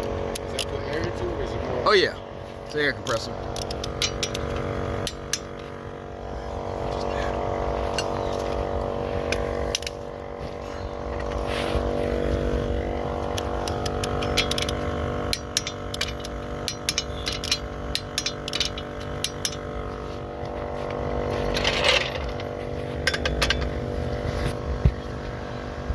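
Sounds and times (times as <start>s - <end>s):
air compressor humming: 0.0s - 25.9s
metallic tool clicks: 13.3s - 19.7s.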